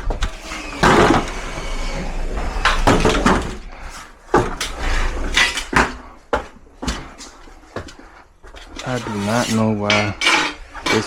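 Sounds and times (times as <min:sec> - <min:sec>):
sheet metal clanks and rattles: 0:08.5 - 0:11.0.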